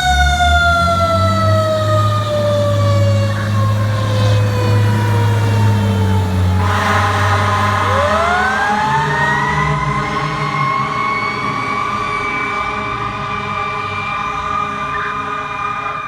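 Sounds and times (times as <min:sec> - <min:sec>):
low drone: 0:00.0 - 0:16.0
mechanical siren wailing: 0:00.0 - 0:16.0.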